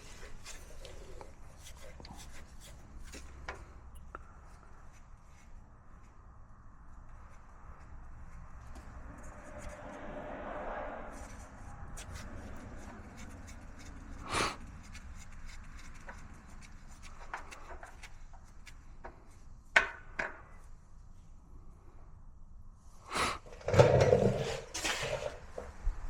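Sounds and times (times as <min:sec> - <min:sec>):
drain tray knocking and rubbing: 0:23.6 - 0:25.8.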